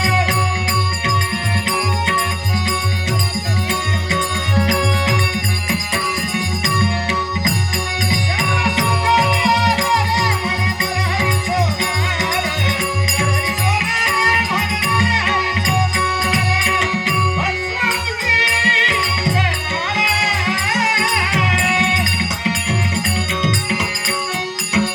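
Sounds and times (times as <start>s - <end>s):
jingling rattle percussion: 0.0s - 24.9s
sustained harmonium tone: 0.0s - 24.9s.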